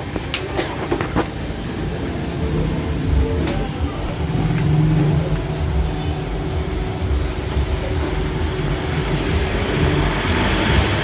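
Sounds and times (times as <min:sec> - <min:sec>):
vehicle rumble: 0:00.0 - 0:11.0
bass from sound system: 0:02.4 - 0:10.8.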